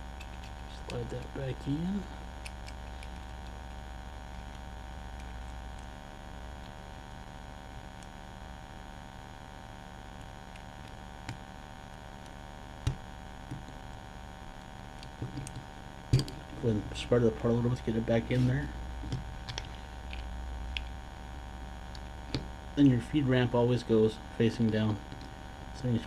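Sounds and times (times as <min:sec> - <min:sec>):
steady electrical hum: 0:00.0 - 0:26.0.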